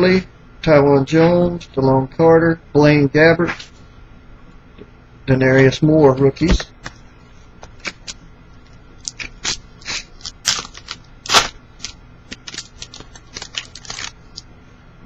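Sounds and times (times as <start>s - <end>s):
trading cards clicking and rustling: 9.0s - 14.5s.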